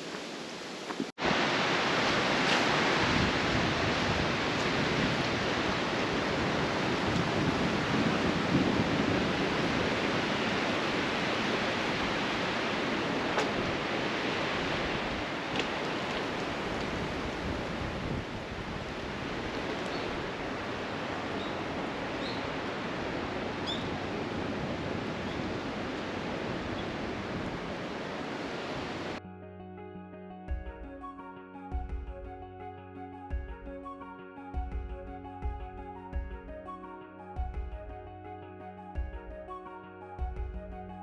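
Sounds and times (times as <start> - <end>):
steady rushing noise: 0.0 - 29.2.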